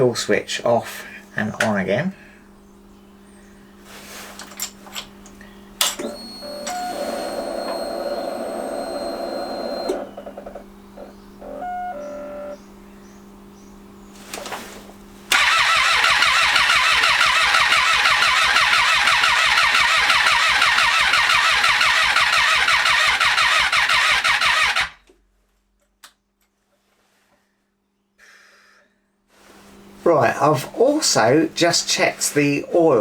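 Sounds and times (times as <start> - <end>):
motorcycle engine cranking: 15.3 - 25.1.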